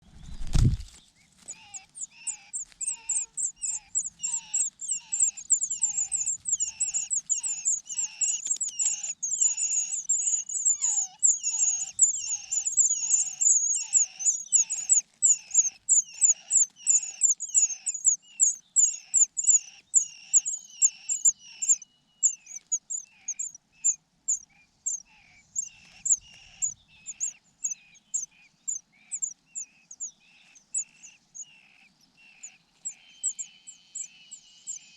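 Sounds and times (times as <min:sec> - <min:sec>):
bird chirping: 0:00.0 - 0:34.9.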